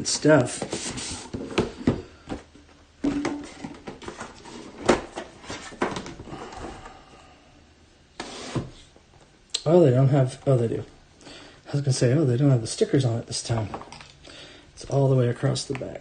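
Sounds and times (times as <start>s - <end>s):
cardboard and plastic rustling: 0.4s - 7.0s.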